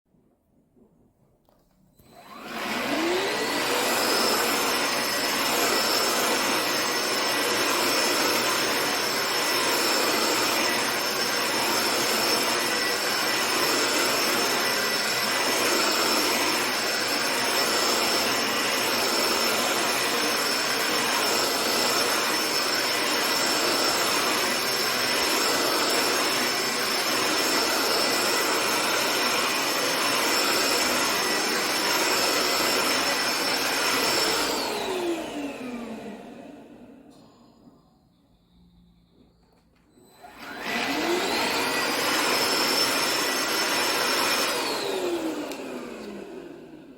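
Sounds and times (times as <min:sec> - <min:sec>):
vacuum cleaner motor whining: 0:02.0 - 0:37.6, 0:39.1 - 0:46.9.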